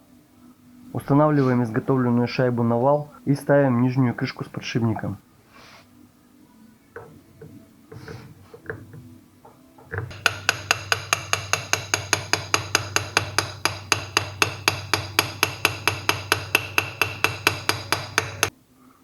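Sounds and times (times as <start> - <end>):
hammer tapping metal: 7.0 - 18.5.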